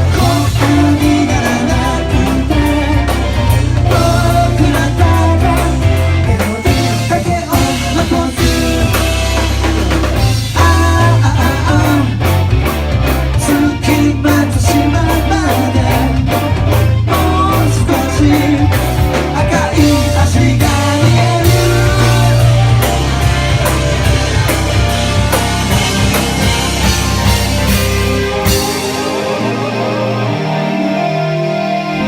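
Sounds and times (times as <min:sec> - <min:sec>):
person singing: 0:00.0 - 0:09.6, 0:10.4 - 0:12.4, 0:13.3 - 0:23.4
drums keeping a steady beat: 0:00.0 - 0:30.4
live rock band playing: 0:00.0 - 0:32.0.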